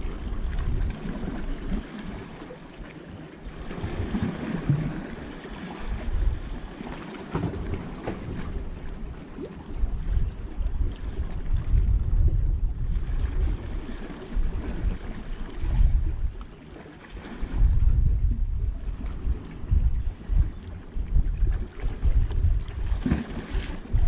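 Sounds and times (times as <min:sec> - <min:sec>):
wind buffeting microphone: 0:00.0 - 0:02.5, 0:03.4 - 0:24.0
sea waves washing on rocks: 0:00.0 - 0:10.3, 0:21.4 - 0:24.0.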